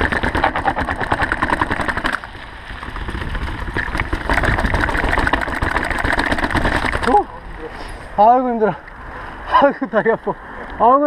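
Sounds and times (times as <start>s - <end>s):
bike rattling on dirt trail: 0.0s - 7.3s.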